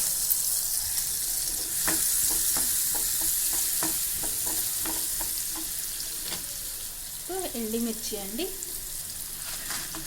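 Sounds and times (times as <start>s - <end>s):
seeds sizzling in a pan: 0.0s - 10.0s
spatula scraping a pan: 9.3s - 10.0s.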